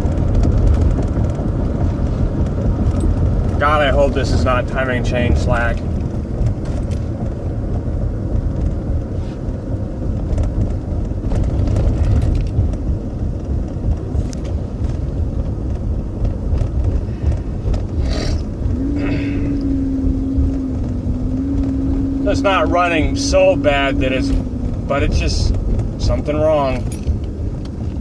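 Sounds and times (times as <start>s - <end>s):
car engine and road noise: 0.0s - 28.0s
engine clicking-knocking: 0.0s - 28.0s
steady hum: 9.4s - 28.0s.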